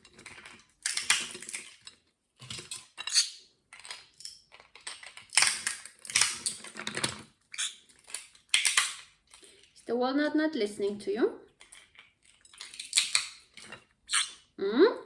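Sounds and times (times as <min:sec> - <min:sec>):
walnut shells clattering against pot: 0:00.0 - 0:09.8, 0:11.5 - 0:14.5.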